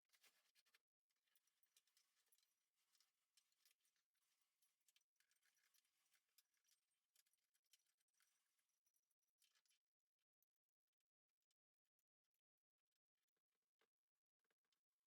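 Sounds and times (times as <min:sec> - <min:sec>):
faint ticks: 0:00.1 - 0:10.5.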